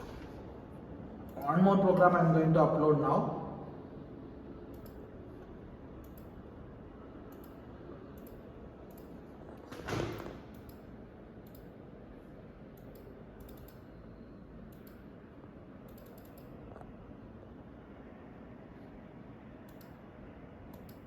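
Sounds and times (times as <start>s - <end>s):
low room noise: 0.0s - 21.0s
computer mouse clicking: 1.2s - 2.0s, 4.7s - 6.5s, 7.3s - 9.6s, 10.5s - 11.8s, 12.7s - 14.0s, 14.6s - 15.1s, 15.8s - 17.0s, 19.6s - 20.0s, 20.7s - 21.0s.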